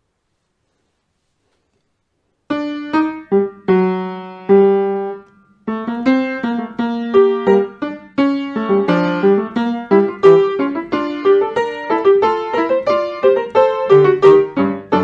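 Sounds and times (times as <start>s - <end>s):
solo piano: 2.5s - 15.0s.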